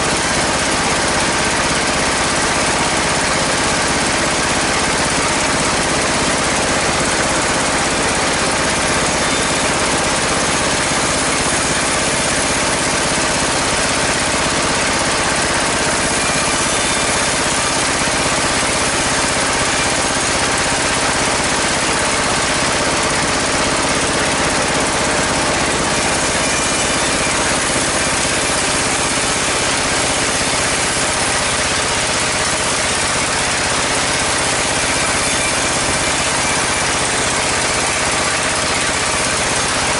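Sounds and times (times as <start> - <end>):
bandsaw running: 0.0 - 39.9
drive engine running: 0.0 - 39.9.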